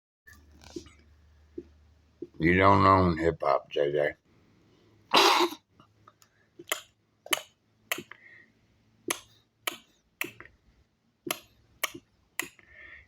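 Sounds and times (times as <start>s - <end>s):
finger snaps: 6.7s - 8.2s, 11.3s - 12.6s.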